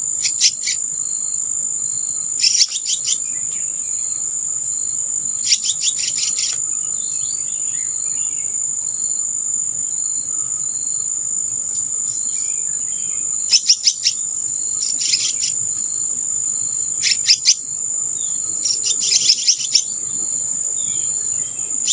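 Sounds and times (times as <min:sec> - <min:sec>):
high-pitched insect drone: 0:00.0 - 0:21.9
insect chirping: 0:00.0 - 0:21.9
rapid bird chirps: 0:00.2 - 0:00.8, 0:02.4 - 0:04.2, 0:05.3 - 0:08.4, 0:11.8 - 0:16.0, 0:16.6 - 0:21.9.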